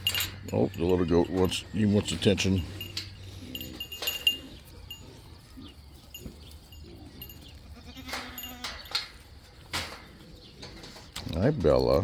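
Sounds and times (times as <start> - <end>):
goat bleating: 7.4 - 8.9.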